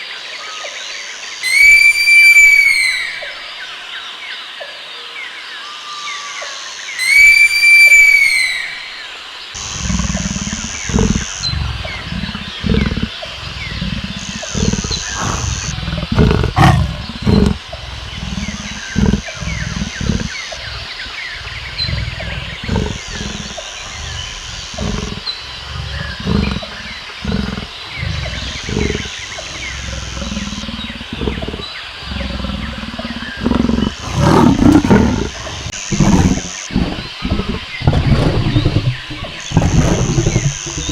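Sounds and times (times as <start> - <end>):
big cat roaring grunts: 9.6 - 40.9.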